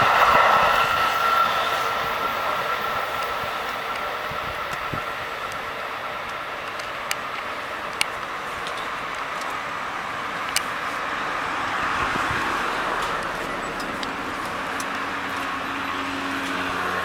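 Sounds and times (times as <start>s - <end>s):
traffic noise: 0.0s - 17.0s
vehicle passing: 0.0s - 17.0s.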